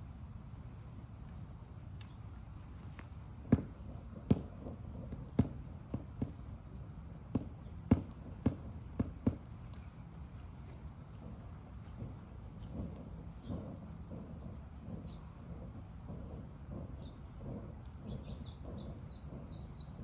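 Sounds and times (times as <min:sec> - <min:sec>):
sharp knocks: 0:07.3 - 0:09.5.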